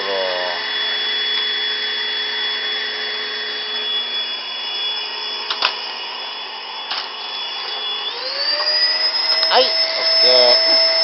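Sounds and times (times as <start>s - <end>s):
vacuum cleaner whining: 0.0s - 11.0s.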